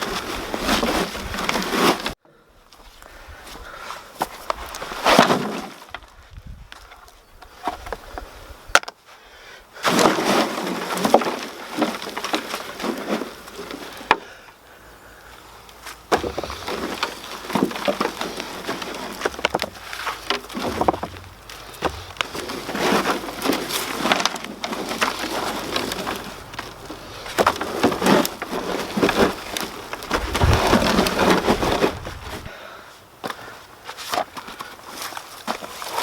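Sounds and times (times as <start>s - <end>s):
hands digging through dry compost: 0.0s - 2.2s, 9.8s - 14.1s, 15.7s - 32.5s, 33.1s - 36.0s.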